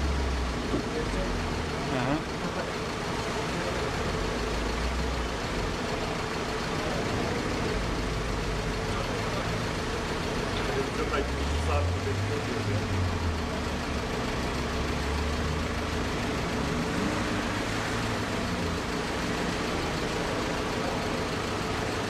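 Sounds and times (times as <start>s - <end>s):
street noise: 0.0s - 22.0s
vehicle engine running: 0.0s - 22.0s.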